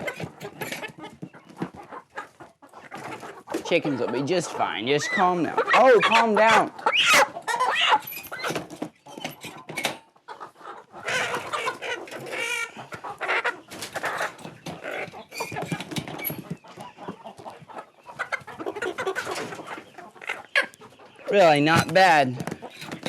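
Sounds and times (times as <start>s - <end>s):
chickens clucking and squawking: 0.0s - 23.0s.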